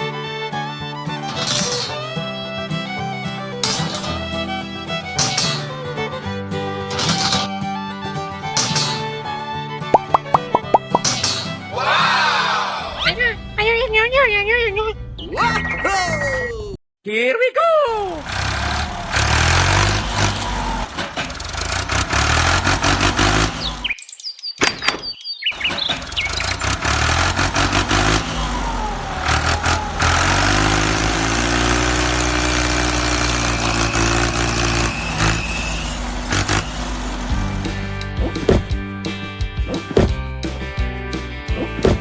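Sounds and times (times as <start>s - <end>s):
tractor engine revving: 18.1s - 23.9s, 25.6s - 38.8s.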